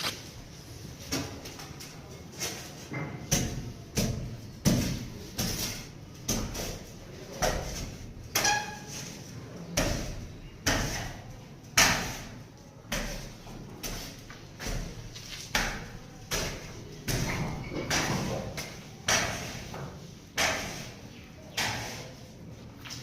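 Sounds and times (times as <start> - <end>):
construction knocks and bangs: 12.9 - 20.8.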